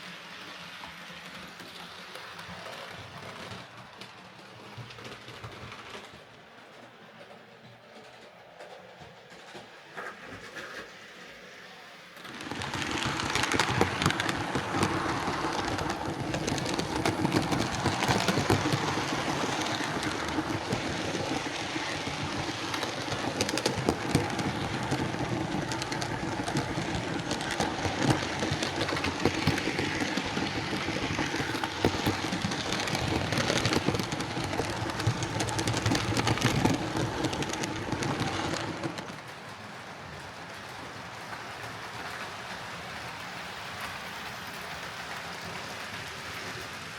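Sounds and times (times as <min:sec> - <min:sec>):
model train motor hum: 0:10.0 - 0:39.1
rattle of wheel clicks: 0:12.3 - 0:39.2.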